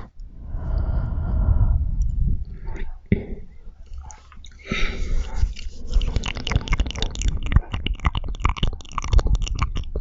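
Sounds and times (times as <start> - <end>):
mouth clicks and smacks: 2.0 - 10.0
wet chewing sounds: 3.9 - 10.0.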